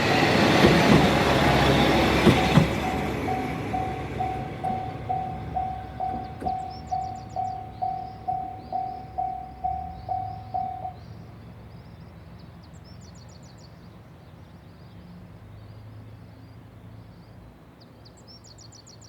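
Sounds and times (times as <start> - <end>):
birds chirping: 0.3 - 11.2
electronic level crossing bell: 2.3 - 11.0.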